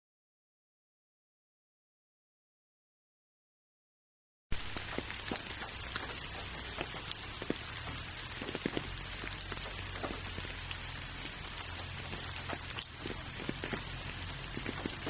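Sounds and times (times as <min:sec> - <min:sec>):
steady rain: 0:04.5 - 0:15.0
drops ticking on a surface: 0:04.6 - 0:15.0.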